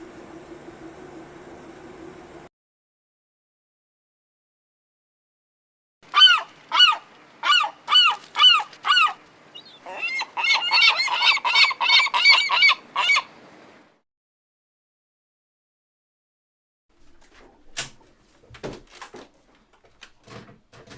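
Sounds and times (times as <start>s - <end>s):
goose honking: 6.1s - 13.4s.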